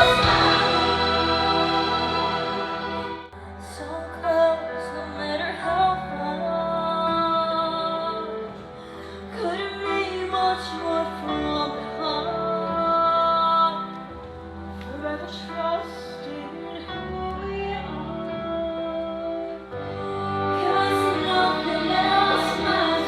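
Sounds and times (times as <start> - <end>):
instrumental accompaniment: 0.0 - 4.1
woman singing slow melody: 3.4 - 14.1.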